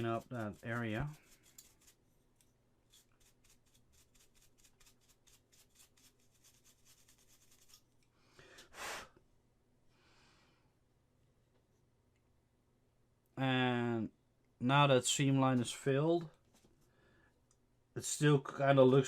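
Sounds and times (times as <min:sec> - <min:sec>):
light rubbing on resin part: 0:00.0 - 0:07.9.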